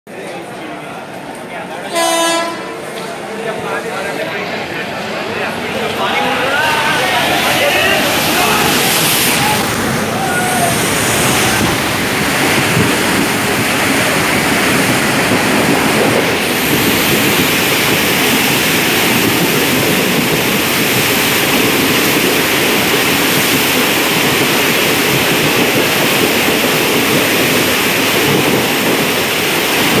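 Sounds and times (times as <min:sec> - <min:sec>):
wind: 0:00.1 - 0:30.0
rushing water: 0:04.6 - 0:30.0
wind buffeting microphone: 0:07.1 - 0:30.0.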